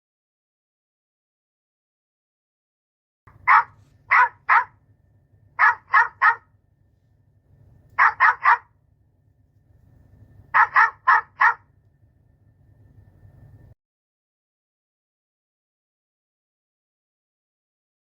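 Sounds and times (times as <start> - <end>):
dog barking: 3.3 - 4.8, 5.6 - 6.5, 8.0 - 8.8, 10.5 - 11.7.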